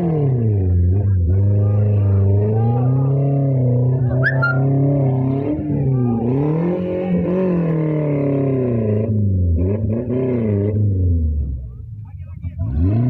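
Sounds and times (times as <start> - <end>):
vehicle engine revving: 0.0 - 11.6, 12.6 - 13.0
brief high squeak: 4.2 - 4.7.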